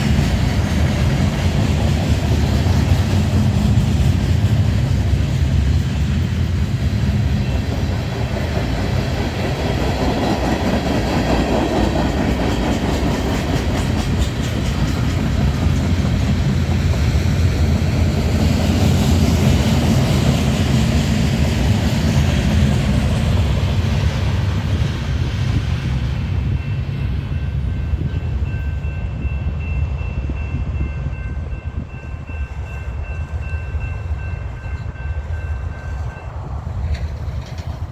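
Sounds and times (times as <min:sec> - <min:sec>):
wheels clacking over rail joints: 0:00.0 - 0:24.8, 0:36.8 - 0:37.9
freight train rumbling: 0:00.0 - 0:37.9.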